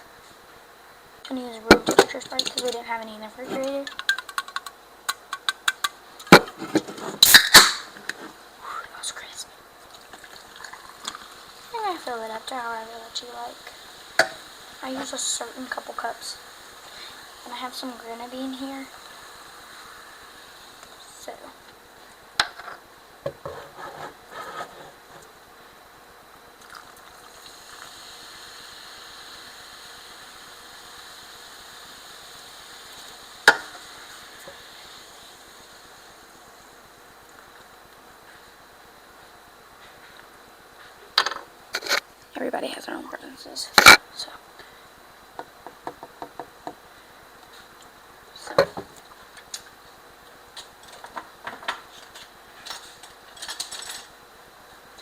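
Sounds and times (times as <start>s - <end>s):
soda fizzing over ice: 9.2s - 21.4s, 26.6s - 37.0s.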